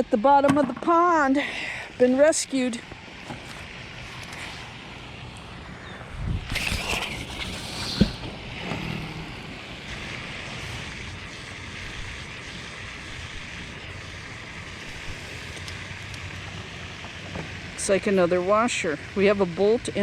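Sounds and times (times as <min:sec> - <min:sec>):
wind noise on microphone: 0:06.0 - 0:13.7.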